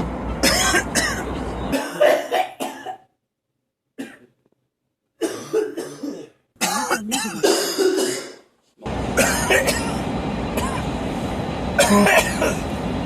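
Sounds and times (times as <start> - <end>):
man coughing: 0.4 - 3.0, 4.0 - 4.3, 5.2 - 8.4, 9.2 - 9.9, 11.8 - 12.6.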